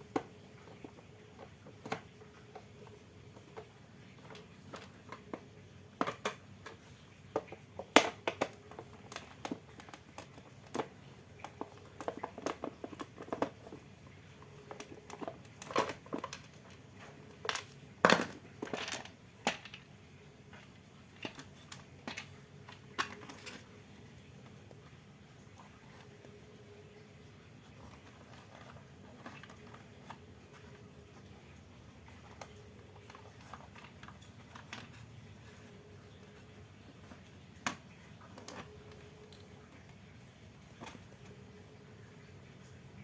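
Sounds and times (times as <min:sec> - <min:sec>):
clicks and knocks of handled parts: 0:00.0 - 0:19.9.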